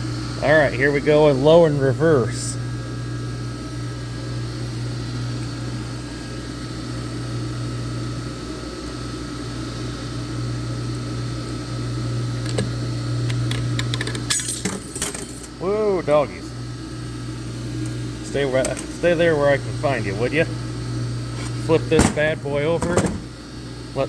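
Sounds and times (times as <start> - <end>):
pump humming: 10.0 - 24.0.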